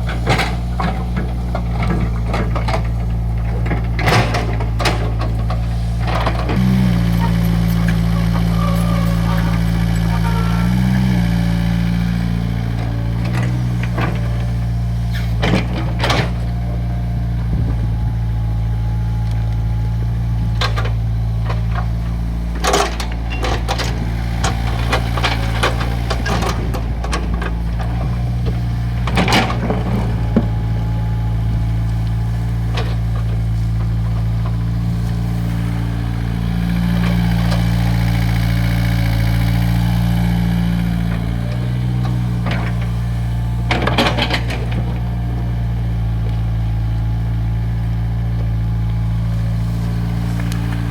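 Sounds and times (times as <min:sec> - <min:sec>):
knocks and clanks: 0:00.0 - 0:08.8, 0:20.5 - 0:31.0, 0:41.1 - 0:45.3
excavator engine running: 0:00.0 - 0:50.9.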